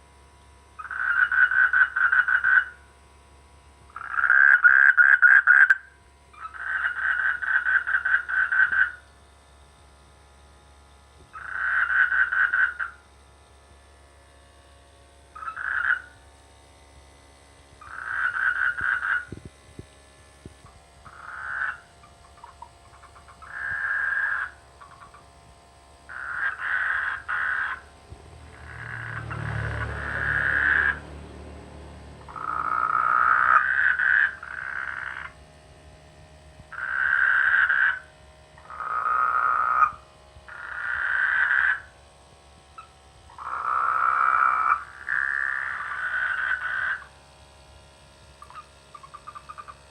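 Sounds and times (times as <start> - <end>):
frogs croaking: 0.7 - 2.9, 3.9 - 9.2, 11.2 - 13.2, 15.3 - 16.3, 17.8 - 19.9, 20.6 - 35.5, 36.6 - 47.3, 48.0 - 49.9
low rumble: 27.8 - 33.1.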